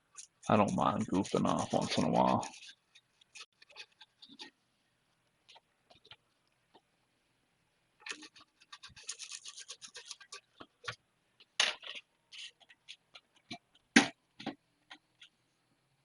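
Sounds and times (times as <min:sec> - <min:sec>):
brush scrubbing circuit board: 0:00.0 - 0:04.6, 0:08.0 - 0:10.6.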